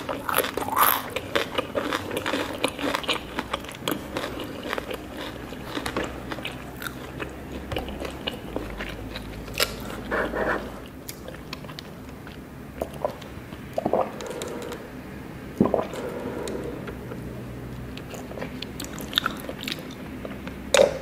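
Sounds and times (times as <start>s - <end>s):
crunchy chewing and biting: 0.0s - 10.2s, 17.9s - 20.0s.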